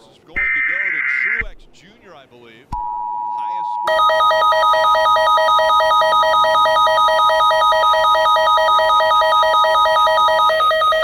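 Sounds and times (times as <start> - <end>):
two-tone attention signal: 2.8 - 11.0
warbling alarm tone: 3.8 - 11.0.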